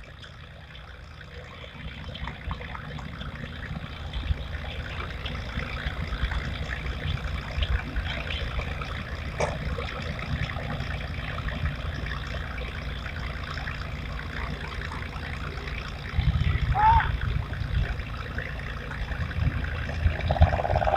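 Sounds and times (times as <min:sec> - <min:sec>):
river water trickling and lapping: 0:00.0 - 0:20.9
low rumble: 0:14.4 - 0:20.9.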